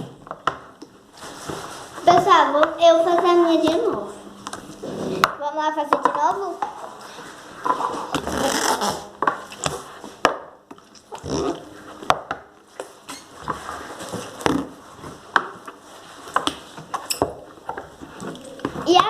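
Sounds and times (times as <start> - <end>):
slime squelching: 6.2 - 19.0.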